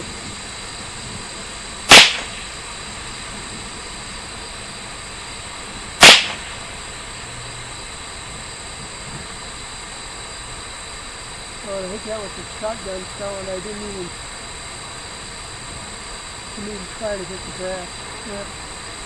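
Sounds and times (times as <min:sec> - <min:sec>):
background hiss: 0:00.0 - 0:19.0
rifle shots: 0:01.9 - 0:02.6, 0:06.0 - 0:06.9.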